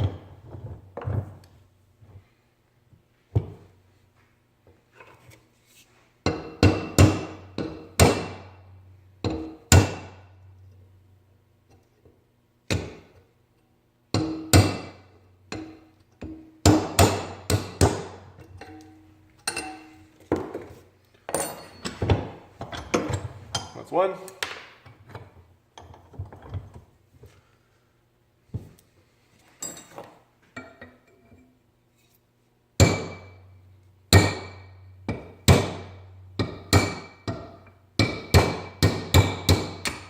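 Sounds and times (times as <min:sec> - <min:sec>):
hammer striking metal punch: 0:06.3 - 0:08.5, 0:09.2 - 0:10.2, 0:14.2 - 0:20.0, 0:32.8 - 0:33.4, 0:34.1 - 0:40.0.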